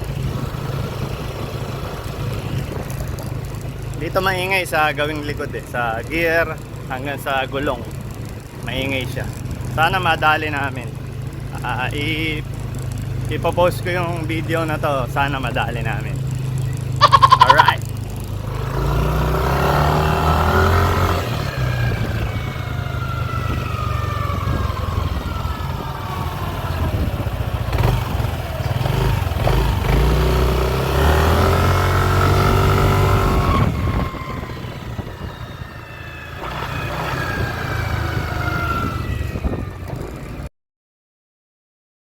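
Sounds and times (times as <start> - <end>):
scooter engine running: 0.0 - 40.5
gear whine: 32.2 - 40.4.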